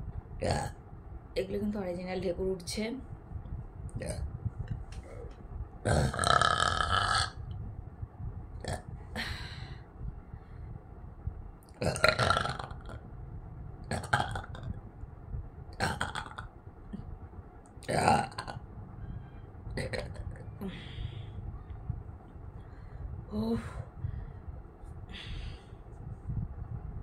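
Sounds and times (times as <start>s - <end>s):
woman burping: 11.8s - 13.0s, 13.9s - 14.7s, 15.8s - 16.5s, 19.8s - 20.6s.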